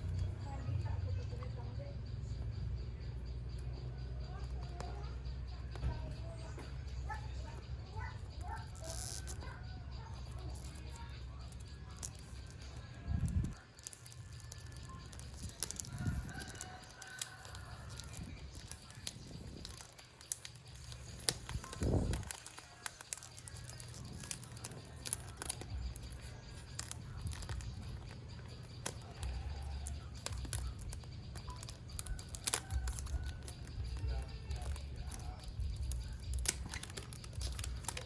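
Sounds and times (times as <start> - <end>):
steady low hum: 0.0 - 38.0
plastic wrap and cardboard crinkling: 10.2 - 38.0.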